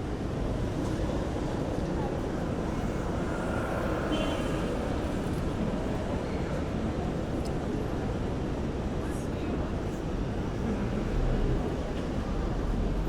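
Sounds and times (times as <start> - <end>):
passing traffic rumble: 0.2 - 7.9.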